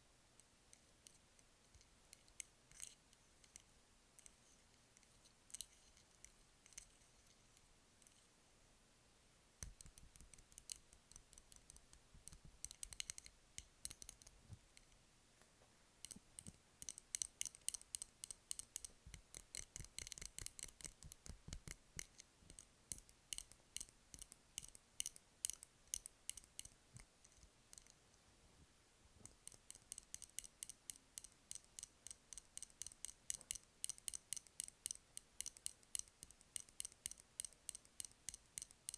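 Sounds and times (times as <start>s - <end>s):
rapid light tapping on candles: 16.0s - 27.9s, 29.2s - 38.9s.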